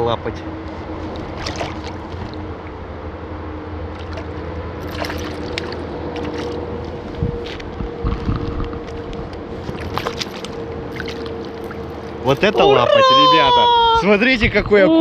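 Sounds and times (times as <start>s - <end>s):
water around a boat: 0.0s - 15.0s
wind: 0.0s - 15.0s
short sharp splashes: 1.1s - 2.4s, 3.9s - 6.6s, 9.6s - 12.3s.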